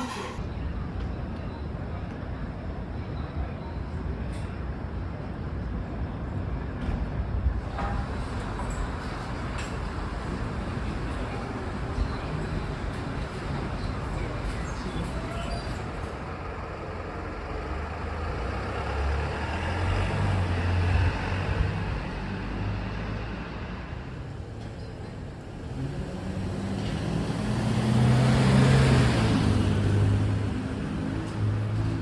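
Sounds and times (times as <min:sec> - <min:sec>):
motor vehicles passing: 0:07.6 - 0:32.0
heavy vehicle passing: 0:16.4 - 0:32.0.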